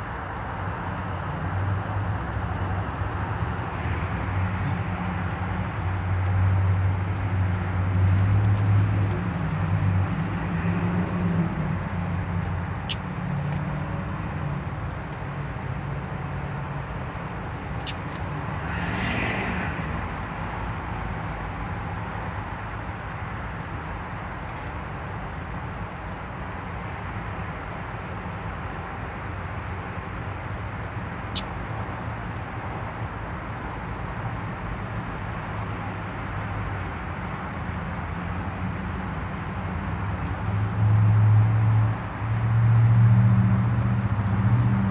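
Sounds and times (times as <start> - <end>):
car engine hum from inside: 1.3 - 18.3, 41.9 - 44.9
low hum inside car: 43.5 - 44.9.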